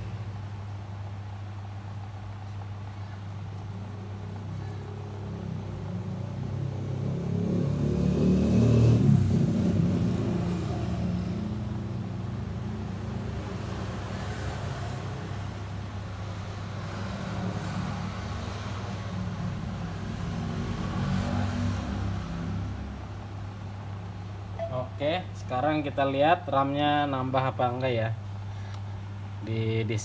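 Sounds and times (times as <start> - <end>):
steady low hum: 0.0 - 20.7
road vehicle passing: 1.6 - 24.5.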